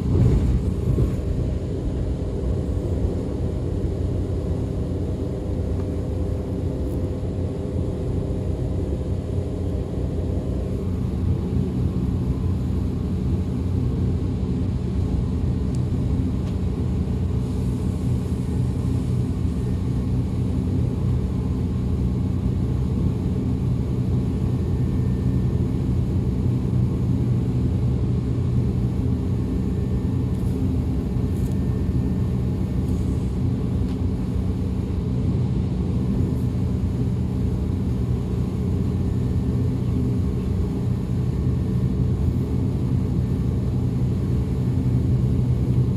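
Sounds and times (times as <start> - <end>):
train wheels rumbling on track: 0.0 - 7.0, 15.8 - 35.4.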